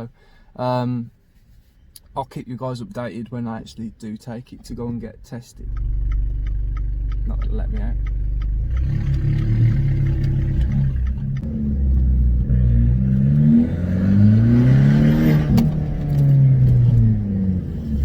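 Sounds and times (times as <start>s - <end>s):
car engine revving: 5.6s - 18.0s.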